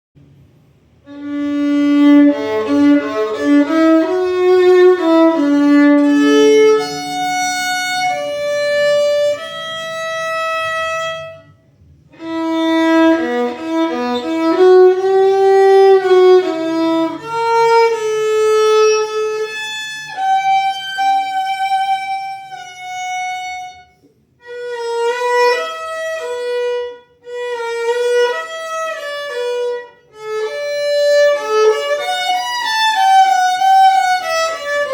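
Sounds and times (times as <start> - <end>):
violin bowing melody: 1.0 - 34.9.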